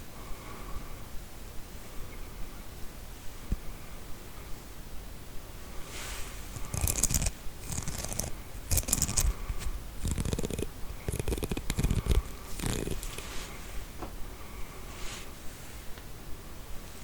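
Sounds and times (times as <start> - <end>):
comb teeth rasping: 6.5 - 13.3.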